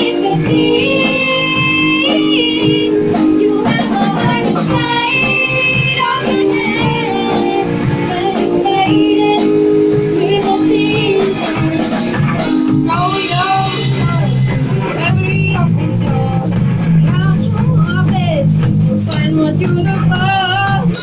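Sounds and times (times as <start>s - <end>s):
lead voice singing: 0.0s - 12.2s, 12.8s - 18.5s
drums: 0.0s - 21.0s
live band playing: 0.0s - 21.0s.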